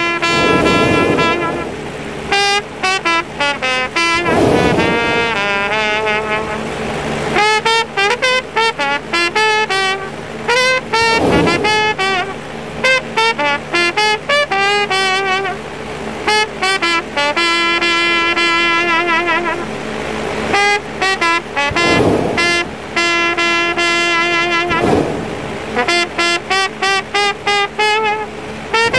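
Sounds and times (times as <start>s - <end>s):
jazz trumpet melody: 0.0s - 28.9s
band accompaniment: 10.5s - 14.3s, 21.3s - 23.3s.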